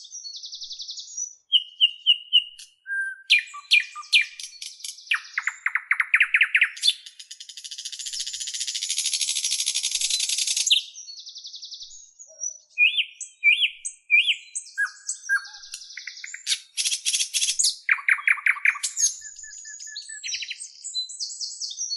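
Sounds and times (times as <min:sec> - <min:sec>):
bird chirps and whistled notes: 0:00.0 - 0:21.9.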